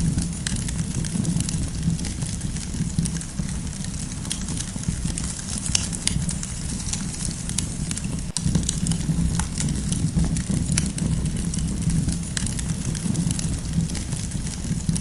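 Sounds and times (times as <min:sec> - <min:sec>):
campfire crackles and pops: 0:00.0 - 0:15.0
low rumble of flames: 0:00.0 - 0:15.0.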